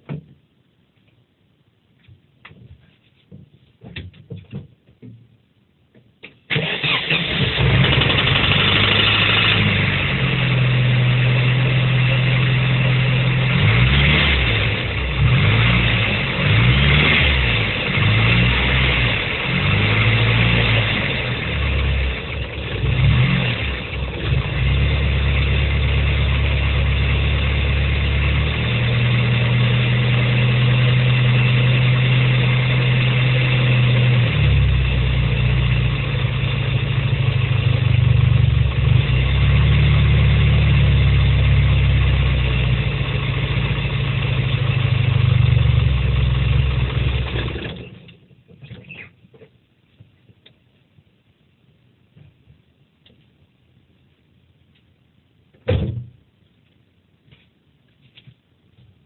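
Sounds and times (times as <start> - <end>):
car engine revving and idling: 6.8 - 48.1.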